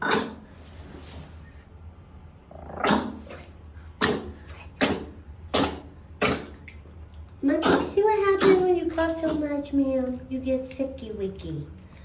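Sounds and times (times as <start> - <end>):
dog sneezing: 0.0 - 0.6, 2.8 - 6.6, 7.6 - 9.5.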